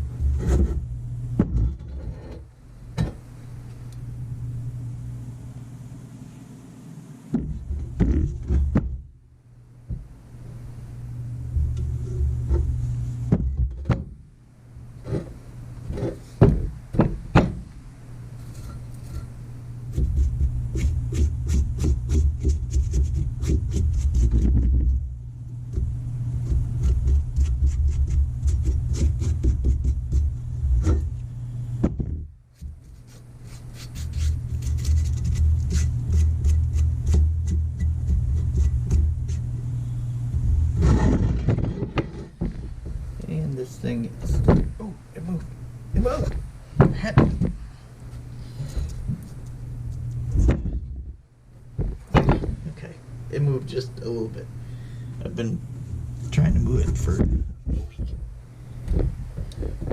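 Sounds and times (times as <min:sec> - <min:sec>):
steady low hum: 0:00.0 - 0:59.9
low rumble: 0:07.3 - 0:14.4, 0:35.0 - 0:43.2, 0:48.8 - 0:53.4.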